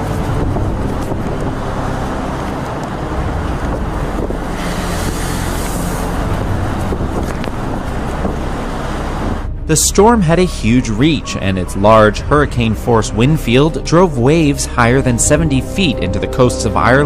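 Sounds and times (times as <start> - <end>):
storm wind: 0.0 - 16.9
heavy surf: 0.0 - 17.0.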